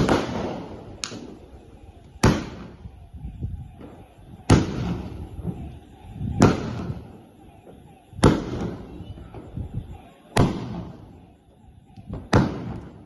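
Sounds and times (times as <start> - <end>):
firework bangs with echo: 0.0 - 1.5, 2.2 - 2.9, 3.7 - 9.6, 10.3 - 11.2, 12.1 - 13.0.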